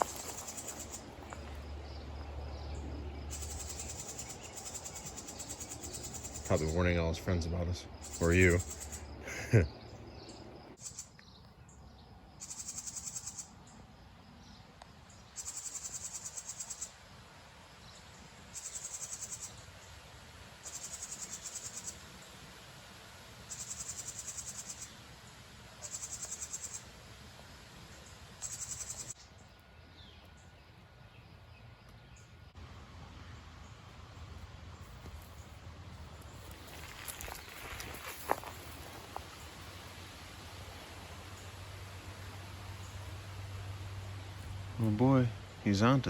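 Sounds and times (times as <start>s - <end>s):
insect buzzing call: 0.0s - 1.7s, 3.2s - 6.8s, 8.0s - 9.2s, 10.8s - 11.2s, 12.3s - 13.6s, 15.3s - 17.0s, 18.5s - 19.6s, 20.6s - 22.1s, 23.5s - 25.0s, 25.8s - 27.0s, 28.0s - 29.2s, 36.4s - 39.8s.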